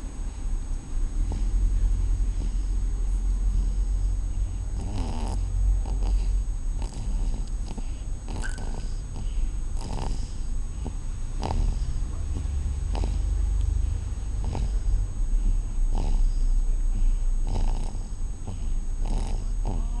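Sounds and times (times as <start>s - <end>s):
person snoring: 4.7s - 13.4s, 15.9s - 20.0s.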